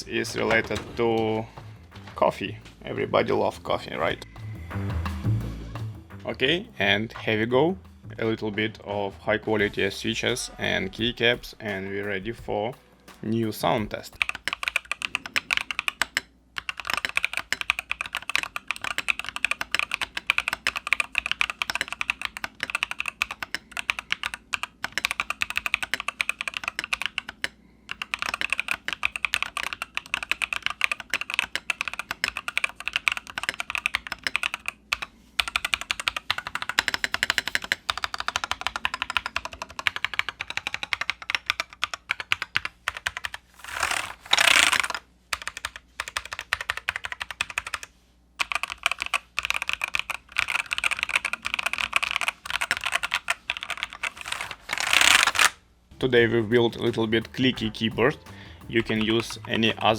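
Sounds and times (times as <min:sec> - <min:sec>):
fast mechanical keyboard typing: 0:00.0 - 0:03.0, 0:13.4 - 0:55.6.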